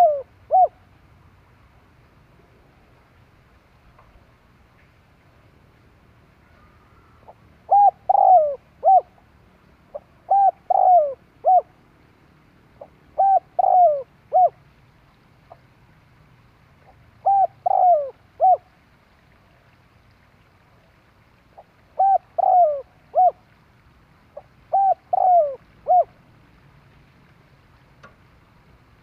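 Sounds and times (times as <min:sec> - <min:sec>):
dove cooing: 0:00.0 - 0:00.8, 0:06.5 - 0:09.2, 0:09.9 - 0:11.8, 0:12.8 - 0:14.6, 0:16.9 - 0:18.7, 0:21.6 - 0:23.5, 0:24.4 - 0:26.2.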